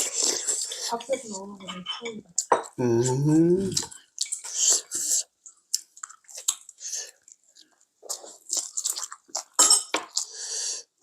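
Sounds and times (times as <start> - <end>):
person biting and chewing food: 2.9 - 10.6.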